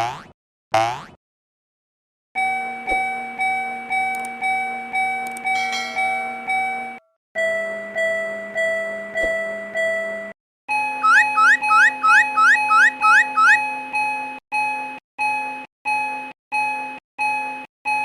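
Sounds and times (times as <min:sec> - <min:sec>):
railroad crossing bell ringing: 0:03.5 - 0:07.0
lower-pitched crossing bell: 0:05.5 - 0:07.0.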